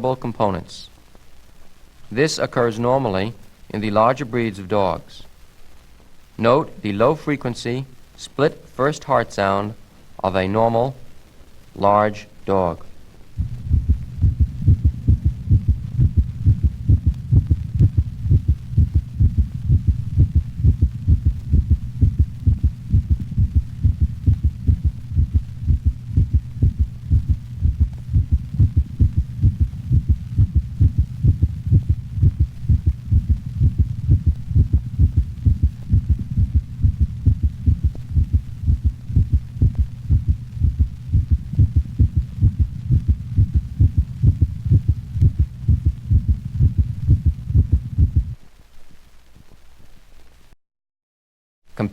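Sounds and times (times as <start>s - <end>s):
steady low hum: 0.0s - 48.5s
dog heartbeat: 13.4s - 48.4s.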